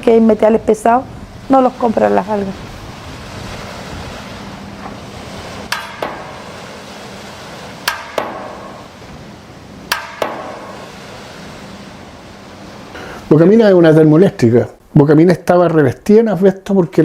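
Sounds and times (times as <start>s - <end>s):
steady low hum: 0.0s - 15.6s
sharp metallic knocks: 5.7s - 11.3s.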